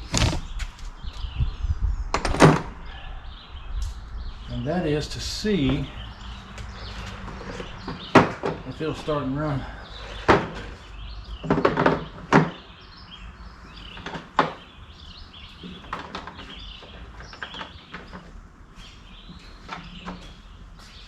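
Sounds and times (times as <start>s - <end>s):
birds chirping: 0.0s - 21.0s
sharp knocks and clatters: 6.6s - 8.8s, 10.1s - 12.7s, 13.9s - 14.7s.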